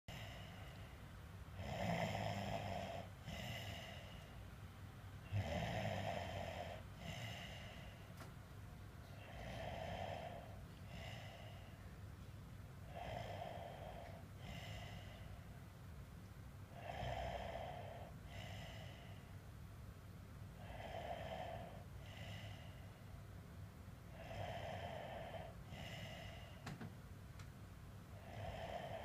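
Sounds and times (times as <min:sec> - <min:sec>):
person snoring: 0:01.6 - 0:04.3, 0:05.3 - 0:08.0, 0:09.2 - 0:11.8, 0:12.9 - 0:15.4, 0:16.8 - 0:19.2, 0:20.6 - 0:22.8, 0:24.1 - 0:26.6, 0:28.2 - 0:29.0.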